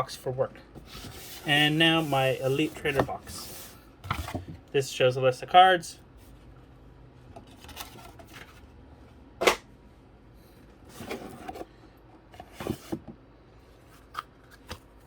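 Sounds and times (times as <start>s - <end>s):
cardboard and paper rustling: 0.8s - 4.5s, 7.4s - 8.7s.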